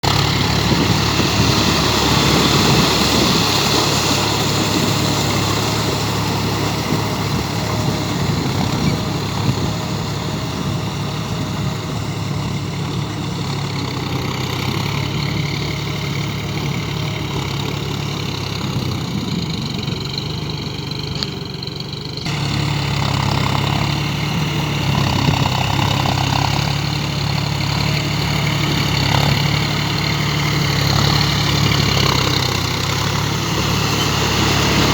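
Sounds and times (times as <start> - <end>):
tractor diesel engine running: 0.0 - 34.9.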